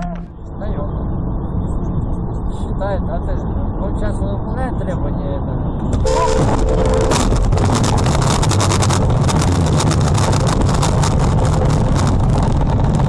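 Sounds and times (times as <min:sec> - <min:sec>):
moving vehicle rumble: 0:00.0 - 0:13.0
crackling on microphone: 0:05.9 - 0:13.0.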